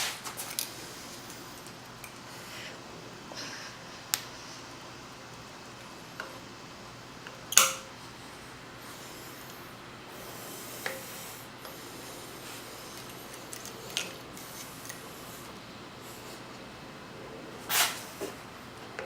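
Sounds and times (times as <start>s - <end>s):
hand tool scraping metal: 17.7s - 18.1s.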